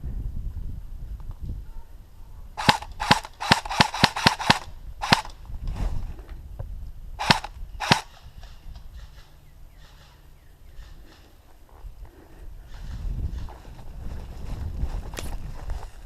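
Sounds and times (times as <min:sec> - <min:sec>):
airsoft rifle shots: 0:02.6 - 0:05.4, 0:07.2 - 0:11.3.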